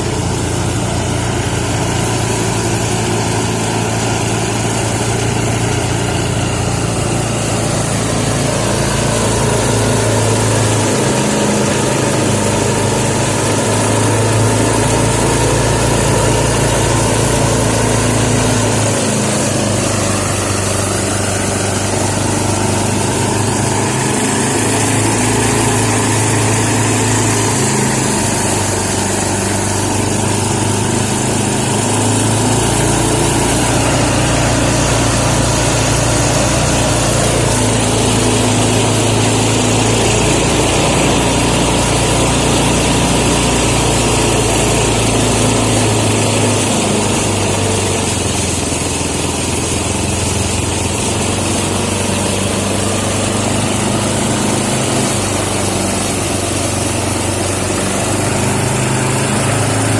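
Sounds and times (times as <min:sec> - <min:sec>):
small engine running: 0:00.0 - 0:59.9.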